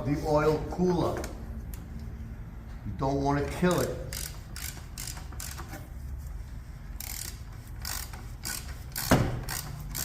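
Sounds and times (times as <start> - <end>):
ratchet wrench clicking: 3.5 - 5.9, 7.0 - 10.0.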